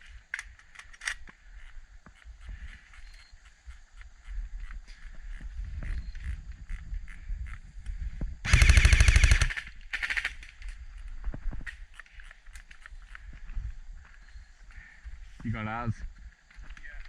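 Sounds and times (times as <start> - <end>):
airsoft gun firing bursts: 8.5 - 10.4.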